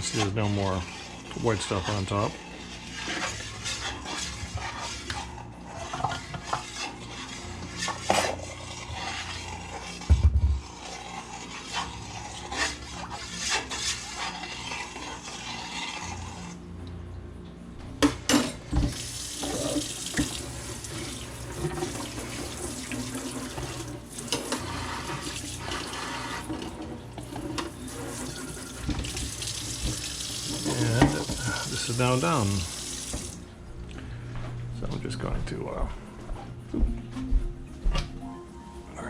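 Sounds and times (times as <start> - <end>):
water running from tap into sink: 18.8 - 33.4.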